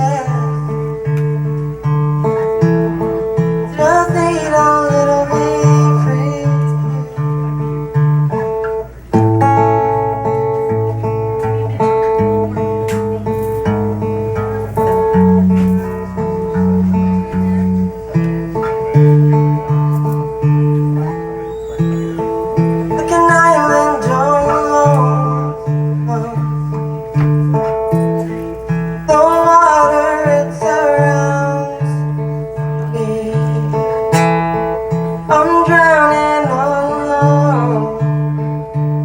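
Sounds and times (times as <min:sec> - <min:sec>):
person singing: 0:00.0 - 0:01.2, 0:03.0 - 0:07.5, 0:22.1 - 0:27.2, 0:29.0 - 0:39.0
acoustic guitar playing: 0:00.0 - 0:39.0.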